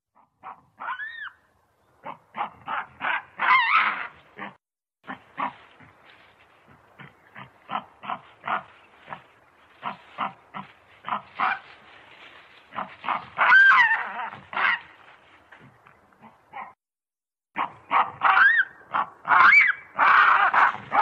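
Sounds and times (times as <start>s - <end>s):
baboon grunting: 7.0s - 11.6s.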